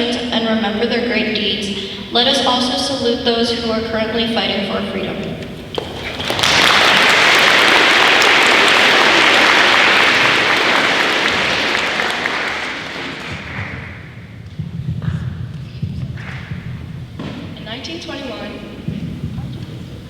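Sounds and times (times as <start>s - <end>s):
audience applauding: 5.7s - 14.0s.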